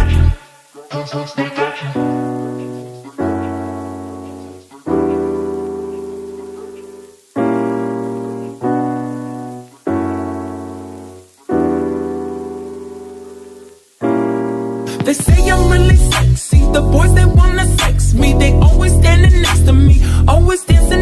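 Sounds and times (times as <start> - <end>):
slow piano chords: 1.4 - 21.0.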